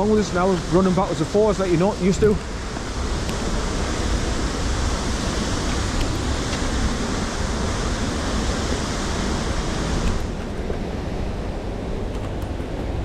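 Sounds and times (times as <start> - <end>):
waterfall rushing: 0.0 - 10.4.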